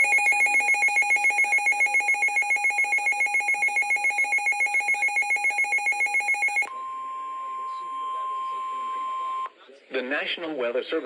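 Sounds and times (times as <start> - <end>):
warbling two-tone alarm beep: 0.0 - 6.7.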